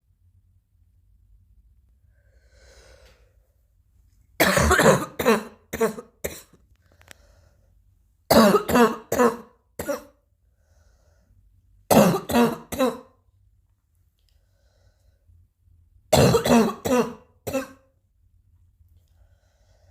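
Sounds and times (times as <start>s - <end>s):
faint breath: 2.0s - 3.6s, 6.8s - 7.9s, 10.4s - 11.6s, 14.3s - 15.4s, 19.0s - 19.9s
person coughing harshly: 4.4s - 6.6s, 8.3s - 10.2s, 11.9s - 13.2s, 16.1s - 17.9s.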